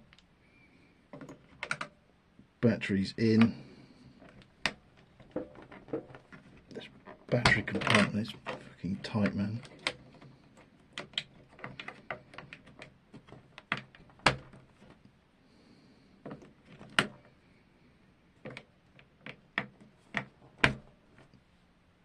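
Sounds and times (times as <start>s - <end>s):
plastic clicks and knocks: 1.1s - 2.0s, 4.2s - 15.0s, 18.4s - 21.4s.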